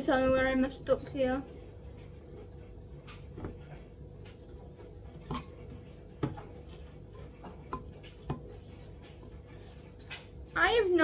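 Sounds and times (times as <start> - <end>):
utensil knocking mixing bowl: 5.1 - 10.1.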